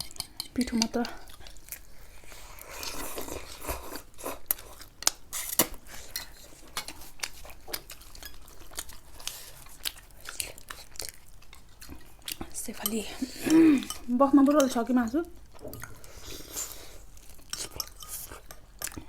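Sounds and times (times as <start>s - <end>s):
crisp pastry chewing: 1.0s - 12.6s.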